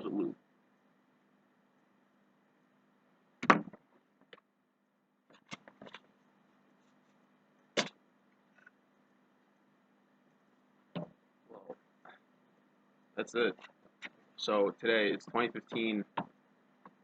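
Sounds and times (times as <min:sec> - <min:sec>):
faint steady hum: 0:00.0 - 0:17.0
items knocking on a surface: 0:11.0 - 0:11.2.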